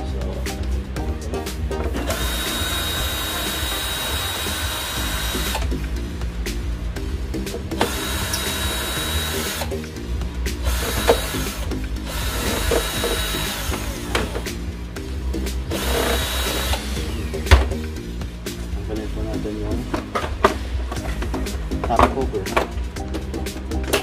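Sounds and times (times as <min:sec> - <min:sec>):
electric screwdriver whining: 0:02.1 - 0:05.7, 0:07.7 - 0:09.8, 0:10.6 - 0:14.6, 0:15.7 - 0:17.7.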